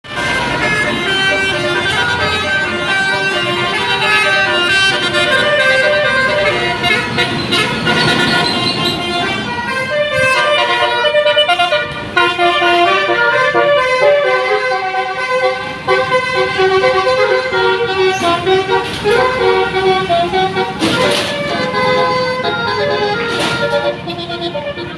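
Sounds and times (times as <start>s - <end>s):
musical vehicle horn melody: 0.0s - 24.9s.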